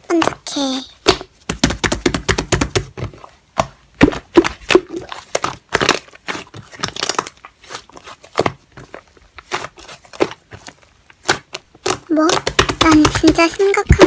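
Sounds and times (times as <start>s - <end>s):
hands squishing slime: 0.0s - 14.0s.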